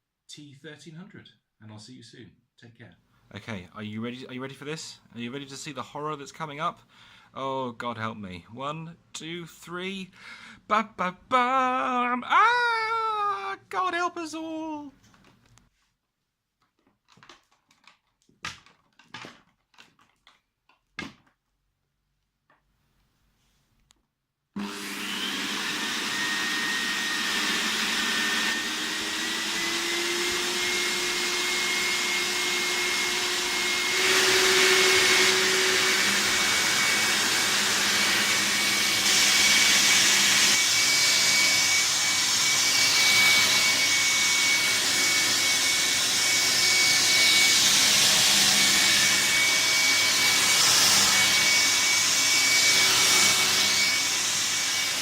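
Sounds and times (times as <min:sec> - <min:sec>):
vacuum cleaner motor whine: 0:24.6 - 0:55.0.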